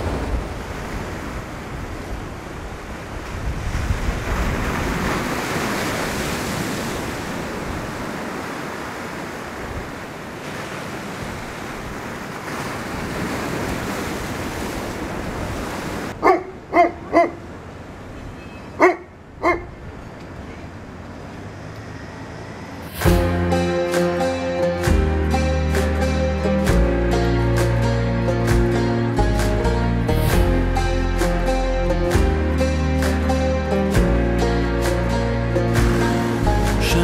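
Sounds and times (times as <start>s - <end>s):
wind noise on microphone: 0.0s - 5.4s
sea surf: 0.0s - 18.8s, 19.9s - 37.0s.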